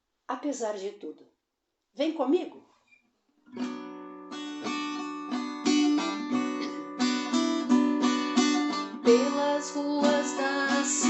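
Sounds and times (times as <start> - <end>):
acoustic guitar strumming chords: 3.6 - 11.0.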